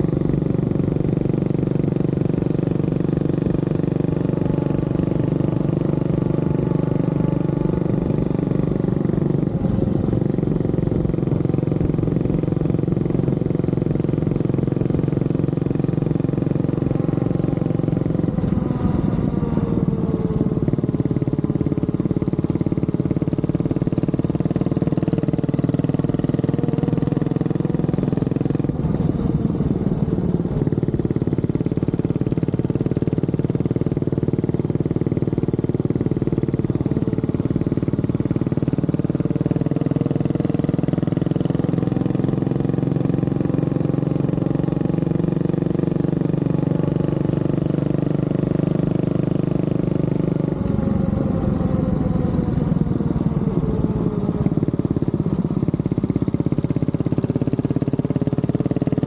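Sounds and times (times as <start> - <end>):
motorcycle engine running: 0.0 - 59.0.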